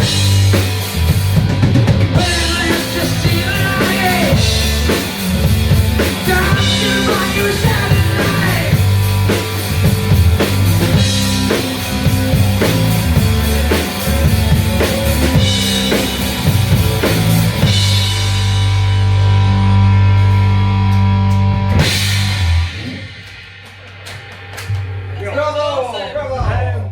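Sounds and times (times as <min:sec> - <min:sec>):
rock band playing live: 0:00.0 - 0:25.3
drum kit beat: 0:00.0 - 0:26.0.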